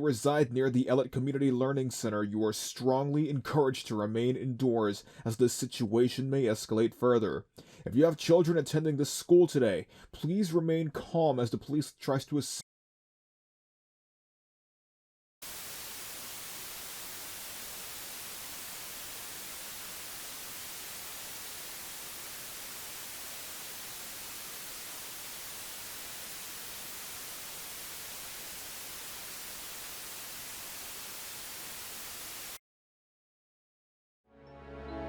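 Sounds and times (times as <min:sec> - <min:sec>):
television static hiss: 0:15.4 - 0:32.6.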